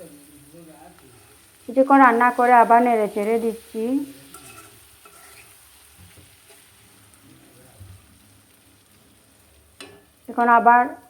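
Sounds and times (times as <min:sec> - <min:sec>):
pickle sizzling in oil: 0:00.0 - 0:11.0
spoon stirring: 0:03.4 - 0:07.2
spoon knocking against pan: 0:09.8 - 0:10.1.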